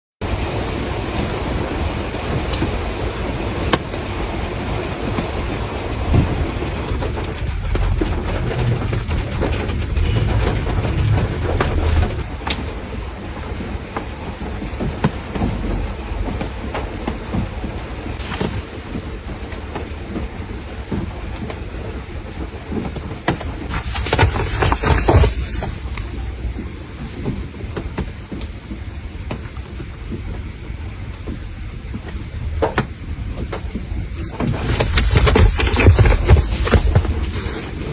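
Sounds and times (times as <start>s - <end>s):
rain falling: 0.2s - 36.0s
low uneven rumble: 5.7s - 13.5s
rushing rain hiss: 17.7s - 22.8s.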